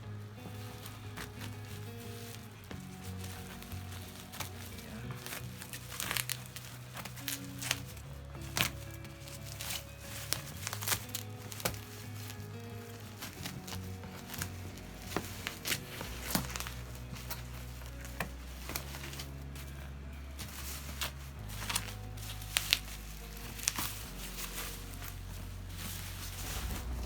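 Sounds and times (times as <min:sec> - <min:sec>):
packaging crinkling and tearing: 0:00.0 - 0:27.0.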